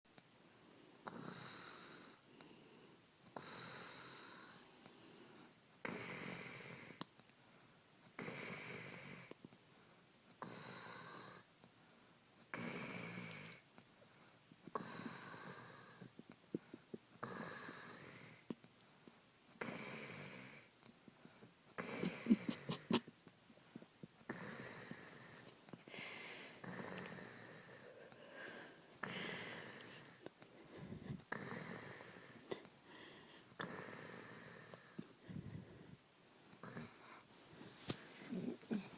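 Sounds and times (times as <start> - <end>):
woman snoring: 1.0 - 2.2, 3.4 - 4.6, 5.8 - 7.0, 8.2 - 9.3, 10.4 - 11.5, 12.6 - 13.6, 14.8 - 16.1, 17.2 - 18.5, 19.6 - 20.7, 21.8 - 23.1, 24.3 - 32.6, 33.6 - 35.7, 36.6 - 37.2.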